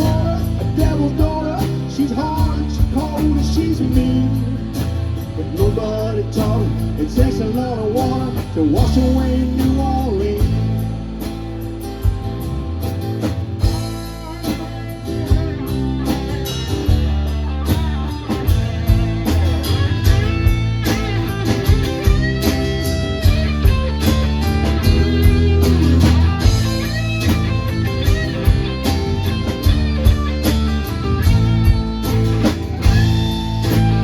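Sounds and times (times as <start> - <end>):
bass: 0.0 - 34.0
steady drums: 0.0 - 34.0
electric guitar solo: 14.0 - 34.0.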